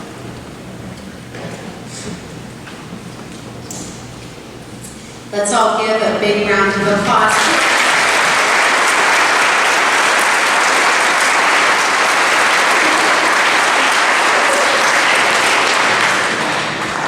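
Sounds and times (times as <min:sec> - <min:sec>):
audience applauding: 0:07.3 - 0:17.0.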